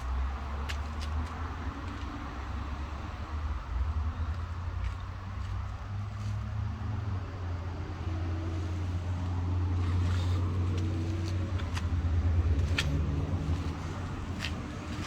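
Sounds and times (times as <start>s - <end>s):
vehicle engine droning: 0.0s - 15.0s.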